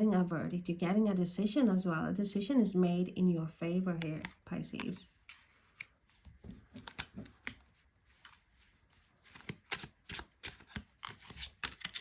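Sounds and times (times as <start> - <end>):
cards being shuffled: 4.1 - 12.0.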